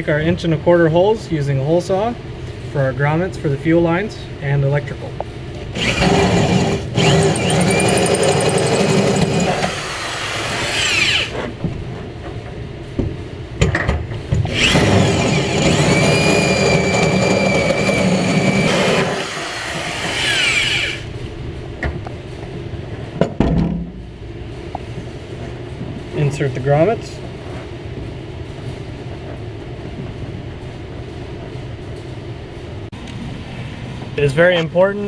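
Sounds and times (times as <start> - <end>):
power drill cutting sheet metal: 5.8 - 11.4, 14.5 - 21.1.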